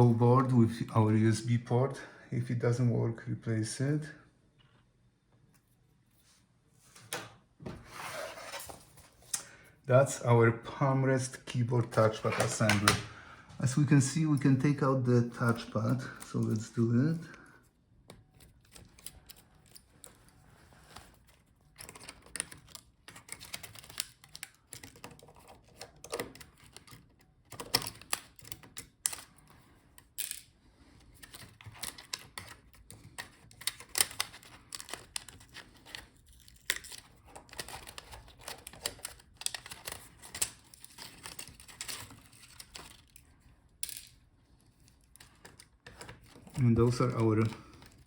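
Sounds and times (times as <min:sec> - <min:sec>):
plastic clicks and rattles: 0:12.0 - 0:13.0, 0:21.7 - 0:30.5, 0:31.1 - 0:44.2.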